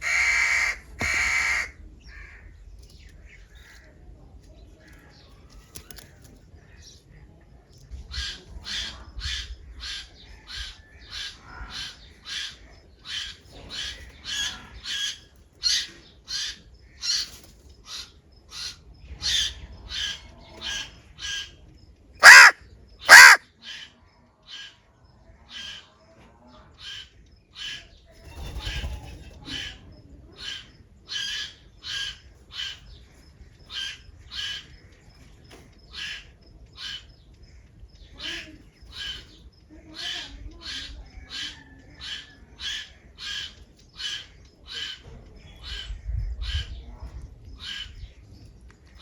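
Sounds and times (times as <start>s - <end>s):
crows cawing: 0.0s - 1.7s, 22.2s - 23.4s.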